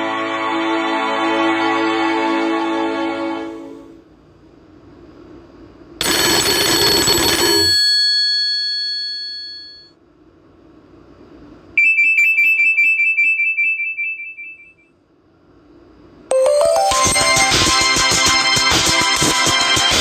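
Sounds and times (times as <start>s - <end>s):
phone alert tone: 6.0s - 7.7s, 16.3s - 19.8s.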